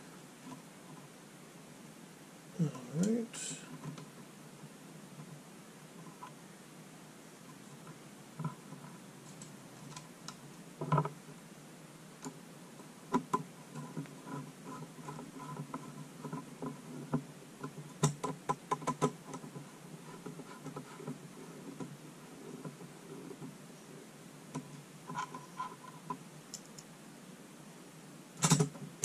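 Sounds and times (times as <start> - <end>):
small plastic and metal parts clicking: 28.4 - 28.8.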